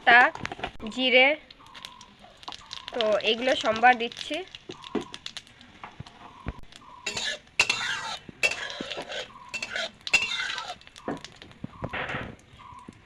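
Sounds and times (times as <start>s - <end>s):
spices sizzling in oil: 0.0s - 13.0s
metal spatula scraping pan: 2.9s - 4.0s, 6.9s - 11.4s.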